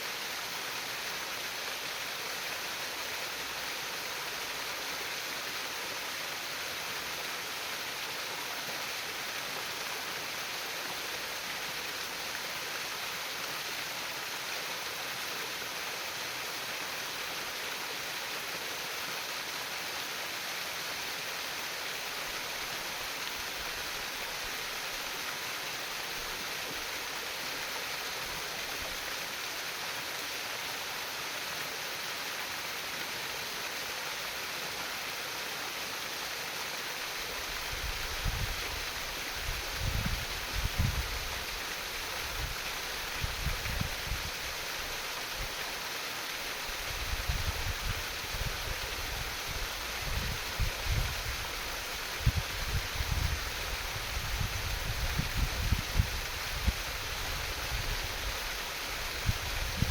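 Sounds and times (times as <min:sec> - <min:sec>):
stream water trickling: 0:00.0 - 0:59.9.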